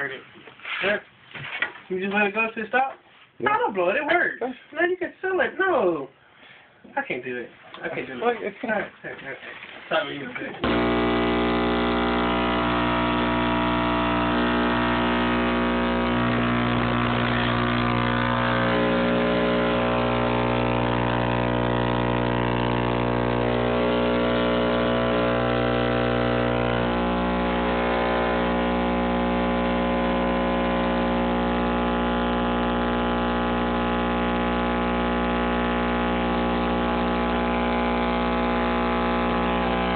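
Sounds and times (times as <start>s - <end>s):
electric motor humming: 10.6s - 39.9s.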